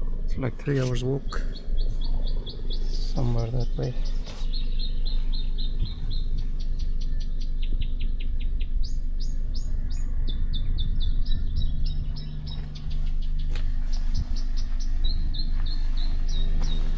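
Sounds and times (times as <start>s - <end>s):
steady low rumble: 0.0s - 16.9s
rapid high chirps: 0.8s - 7.6s, 11.4s - 16.9s.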